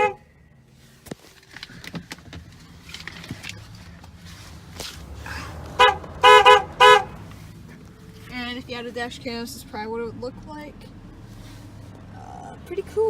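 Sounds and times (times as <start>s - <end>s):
low steady rumble: 0.0s - 13.0s
footsteps: 0.9s - 6.2s.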